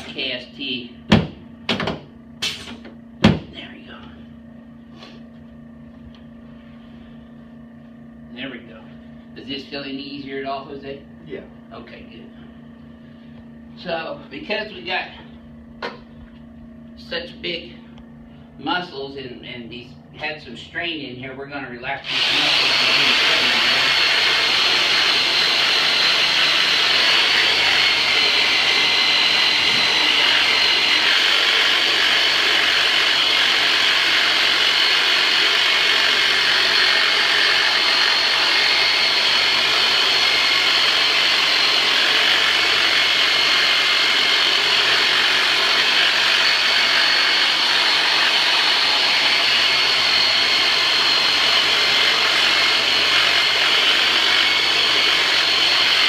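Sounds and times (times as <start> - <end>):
vibration massager motor whine: 0.0 - 56.0.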